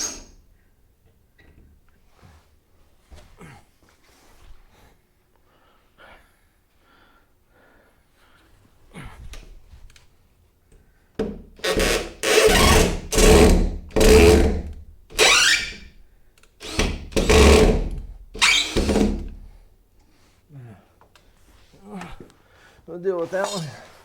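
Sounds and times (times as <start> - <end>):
power drill driving a screw: 11.6 - 15.8, 16.6 - 19.2.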